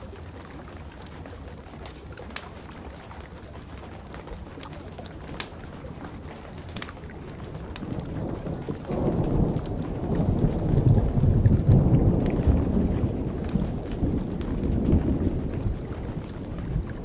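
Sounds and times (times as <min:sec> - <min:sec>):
campfire crackles: 0:00.0 - 0:17.0
steady rain: 0:00.0 - 0:17.0
thunder rolling: 0:07.8 - 0:17.0.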